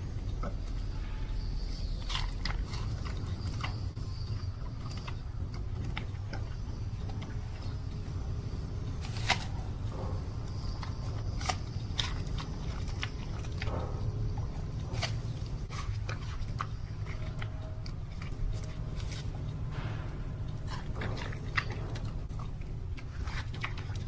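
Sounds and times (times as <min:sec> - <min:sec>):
animal chewing and crunching food: 0:00.0 - 0:24.0
steady low hum: 0:00.0 - 0:24.0.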